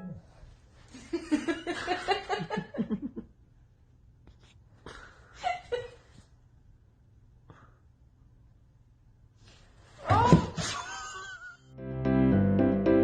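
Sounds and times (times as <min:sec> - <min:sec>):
person laughing: 0:10.6 - 0:11.6.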